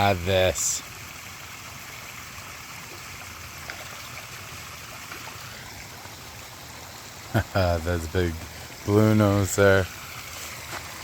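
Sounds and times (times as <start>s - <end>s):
pond waterfall splashing: 0.0s - 11.0s.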